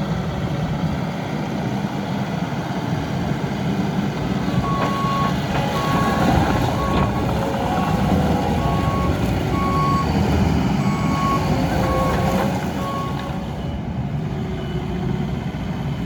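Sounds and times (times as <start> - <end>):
diesel engine running: 0.0 - 16.0
reversing alarm beeping: 4.6 - 13.9.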